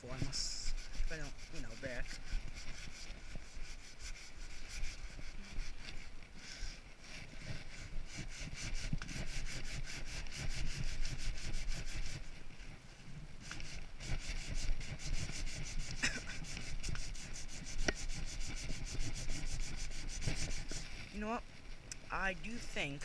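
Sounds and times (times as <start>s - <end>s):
sandpaper scraping wood: 0.0s - 12.8s, 13.4s - 21.4s.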